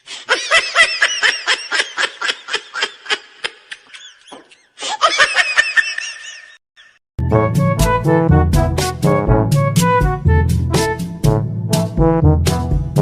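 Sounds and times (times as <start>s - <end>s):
high-pitched laughing: 0.2s - 7.0s.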